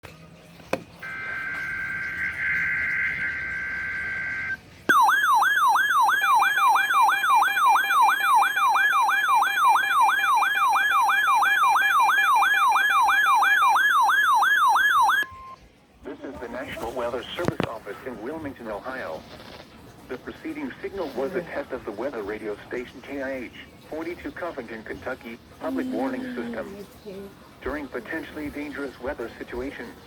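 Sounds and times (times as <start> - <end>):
rising and falling siren alarm: 1.0 - 15.6.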